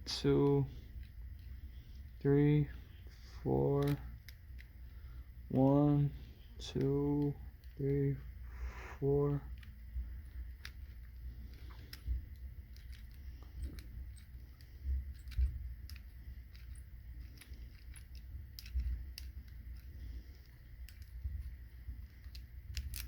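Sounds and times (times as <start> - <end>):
lock pick clicking and scraping: 9.5 - 23.0.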